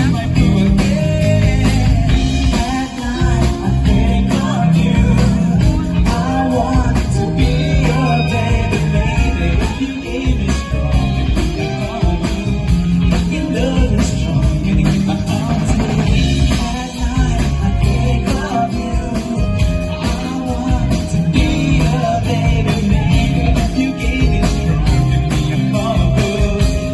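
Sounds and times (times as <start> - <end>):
drum kit: 0.0 - 26.9
guitar: 0.0 - 26.9
person singing: 0.0 - 26.9.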